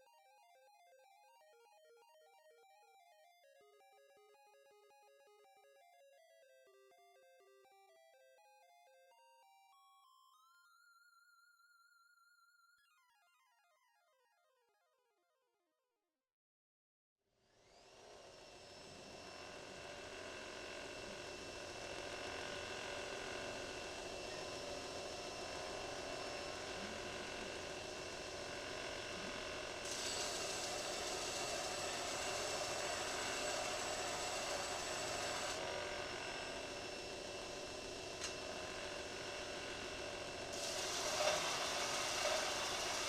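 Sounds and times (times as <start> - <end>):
belt grinder whining: 17.6 - 43.0.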